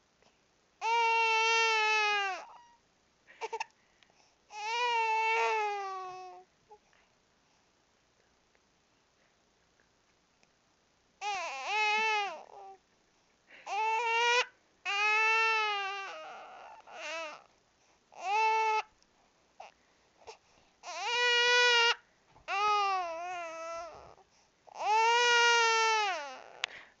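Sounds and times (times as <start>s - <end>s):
baby crying: 0.8s - 2.8s, 4.5s - 6.4s, 11.2s - 12.8s, 13.6s - 17.5s, 18.2s - 18.9s, 20.8s - 26.7s.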